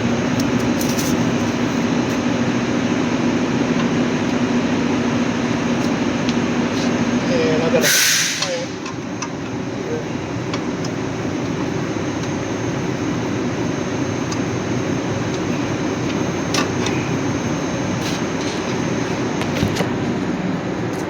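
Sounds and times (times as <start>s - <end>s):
mechanical droning: 3.8s - 20.1s.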